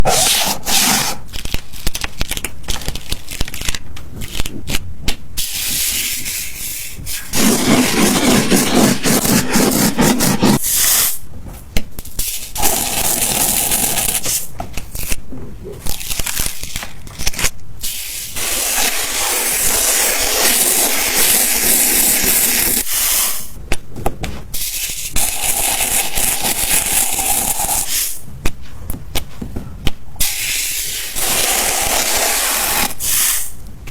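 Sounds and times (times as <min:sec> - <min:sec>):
scratchy strokes: 0:05.4 - 0:11.2, 0:17.9 - 0:23.4, 0:30.2 - 0:33.5
sand grains hissing: 0:30.2 - 0:33.6.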